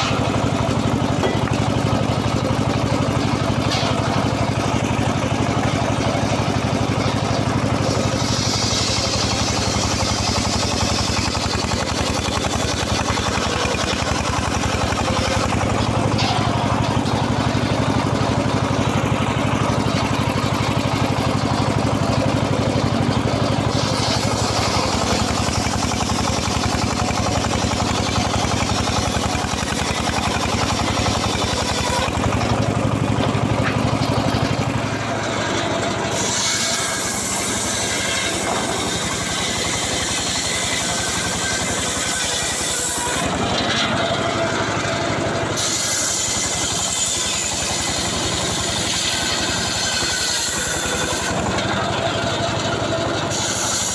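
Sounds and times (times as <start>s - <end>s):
engine running: 0.0s - 53.9s.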